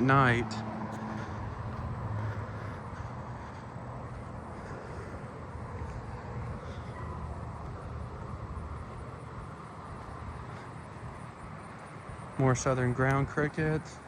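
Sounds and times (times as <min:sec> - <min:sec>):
low outdoor rumble: 0:00.0 - 0:14.0.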